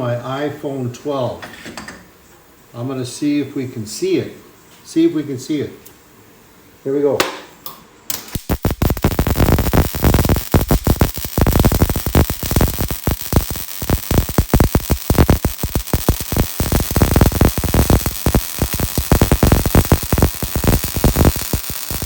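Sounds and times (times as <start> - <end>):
welding arc crackling: 8.1 - 22.0.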